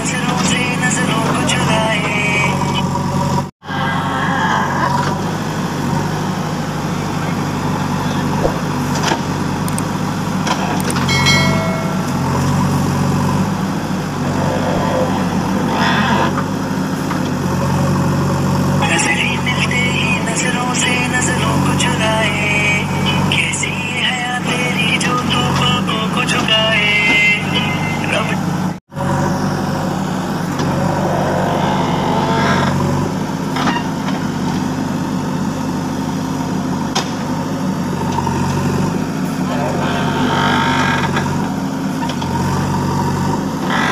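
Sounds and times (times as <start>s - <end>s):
diesel engine running: 0.0s - 43.9s
brief high tone: 11.0s - 13.2s, 27.2s - 28.5s.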